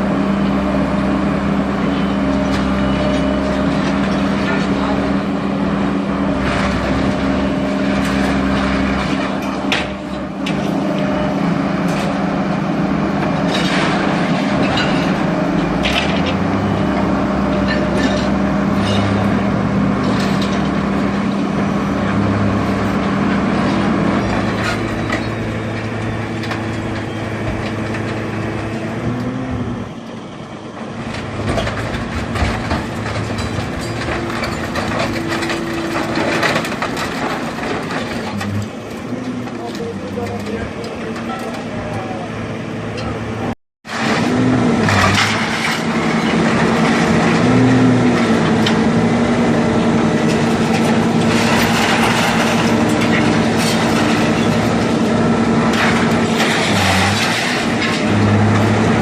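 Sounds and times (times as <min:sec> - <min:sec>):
scrap metal clanking: 0:43.9 - 0:47.5, 0:50.2 - 0:59.0.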